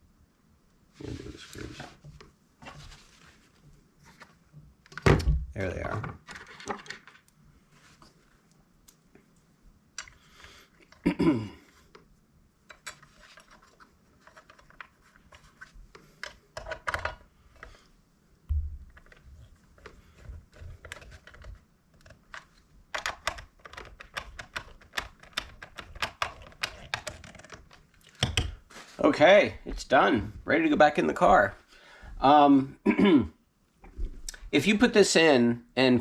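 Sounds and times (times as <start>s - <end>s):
small parts clicking and tapping: 10.0s - 11.0s, 11.9s - 17.8s, 19.8s - 28.6s.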